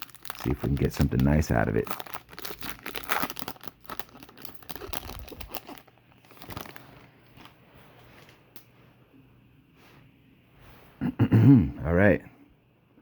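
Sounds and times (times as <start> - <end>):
plastic foil wrapper tearing: 0.0 - 7.5.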